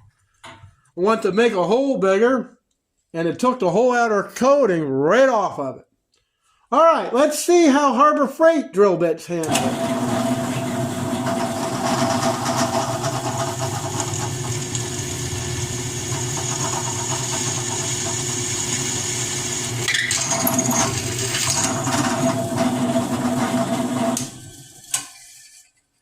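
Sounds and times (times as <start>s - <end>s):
electric drill motor running: 9.5s - 24.9s.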